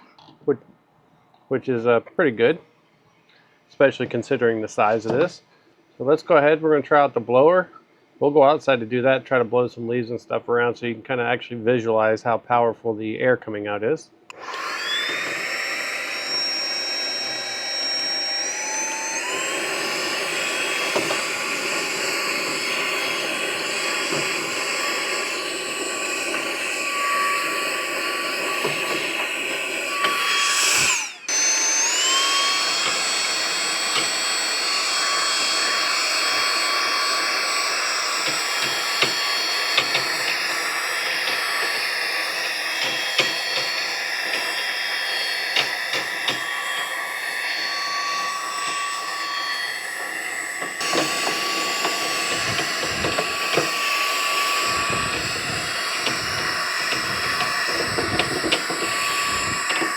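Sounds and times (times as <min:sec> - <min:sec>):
air duster motor whine: 0:14.3 - 0:59.9.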